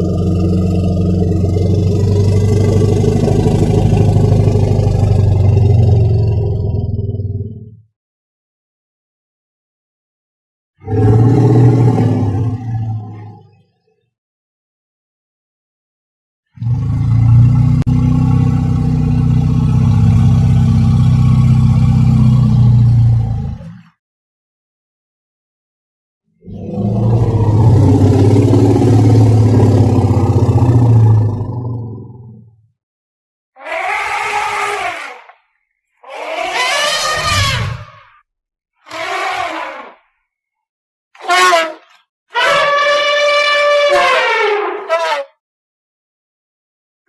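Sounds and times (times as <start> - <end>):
elephant rumbling growl: 0.0 - 7.5, 10.8 - 13.6, 26.4 - 32.4
elephant call: 33.6 - 35.3, 36.0 - 38.0, 38.9 - 40.0, 41.2 - 45.4.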